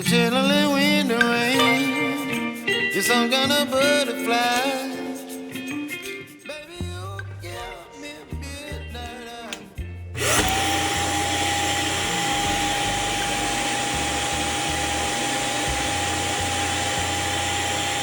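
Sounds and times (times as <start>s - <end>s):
vacuum cleaner motor whining: 10.2s - 18.0s.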